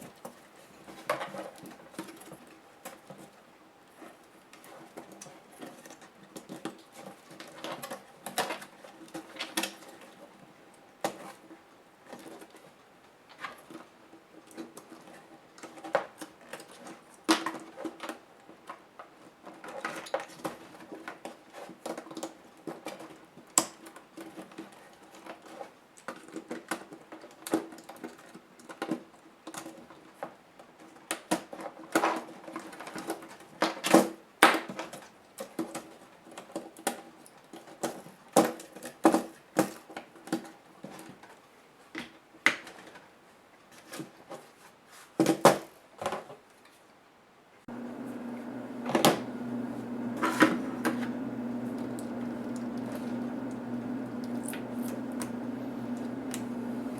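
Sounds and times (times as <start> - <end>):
steady low hum: 47.7 - 56.9.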